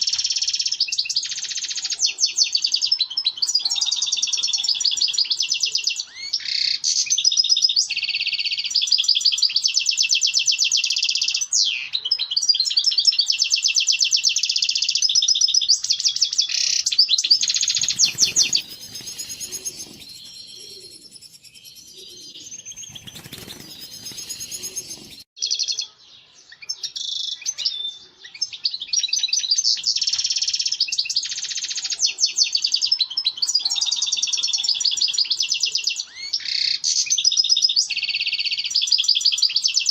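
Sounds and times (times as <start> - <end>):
goldfinch twittering and trills: 0.0 - 27.8.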